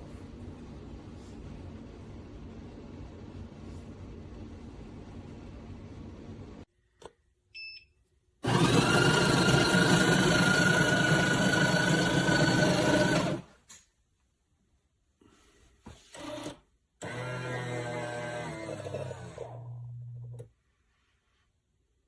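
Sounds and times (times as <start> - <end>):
espresso machine beep: 7.6 - 8.0
espresso machine running: 8.4 - 13.5, 17.0 - 19.7.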